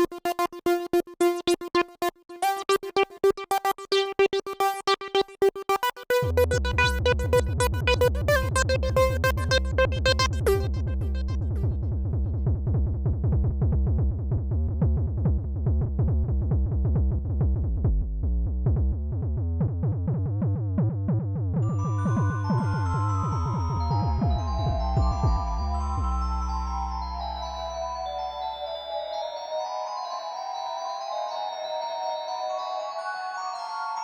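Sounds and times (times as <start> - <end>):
synthesizer ringtone jingle: 5.6 - 11.4, 21.6 - 34.0.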